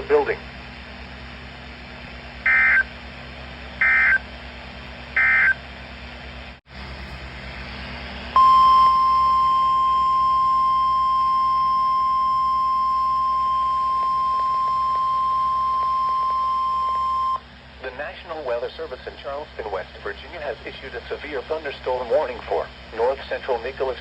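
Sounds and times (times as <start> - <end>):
receiver hiss and hum: 0.0 - 24.0
steady piercing alarm tone: 2.5 - 2.8, 8.4 - 17.4
buzzing digital chirps: 8.4 - 17.4.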